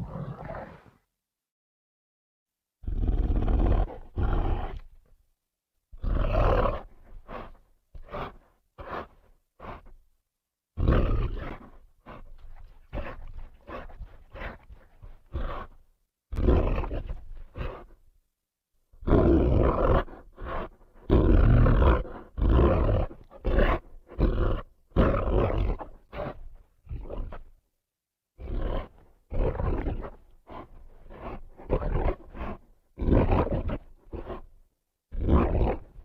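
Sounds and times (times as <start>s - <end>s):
animal roars and growls: 0.0s - 0.9s, 2.8s - 4.8s, 19.0s - 27.4s, 28.4s - 34.5s, 35.1s - 36.0s.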